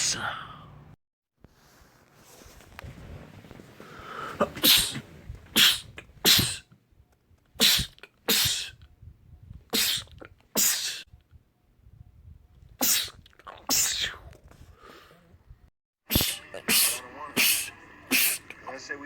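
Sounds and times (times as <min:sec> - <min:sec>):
man sneezing: 0:04.2 - 0:06.7, 0:07.6 - 0:08.8, 0:09.7 - 0:11.0, 0:12.8 - 0:14.3, 0:16.1 - 0:18.4.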